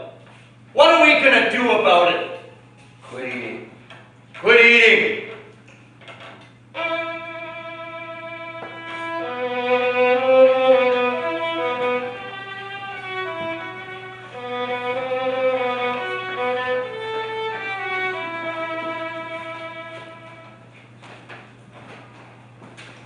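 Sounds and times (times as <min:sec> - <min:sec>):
solo violin melody: 0:06.7 - 0:20.6.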